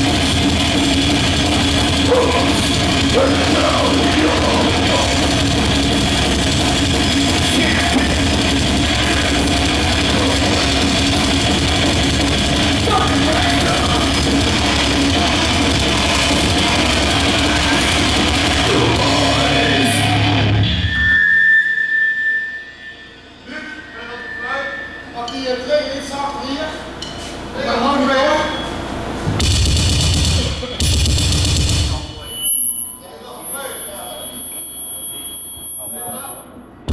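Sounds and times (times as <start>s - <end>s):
metal band playing: 0.0s - 21.0s
person yelling vocals: 12.8s - 14.2s
high ringing tone: 19.0s - 26.4s, 32.1s - 36.5s.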